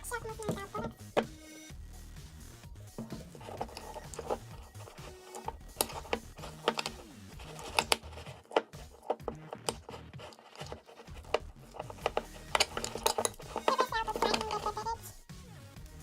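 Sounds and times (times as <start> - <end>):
faint background music: 0.0 - 16.0.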